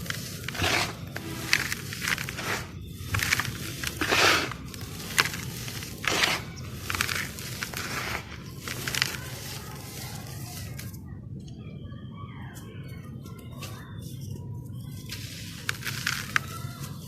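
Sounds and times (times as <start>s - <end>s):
slabs crumbling and crackling: 0.0s - 10.9s, 15.0s - 17.0s.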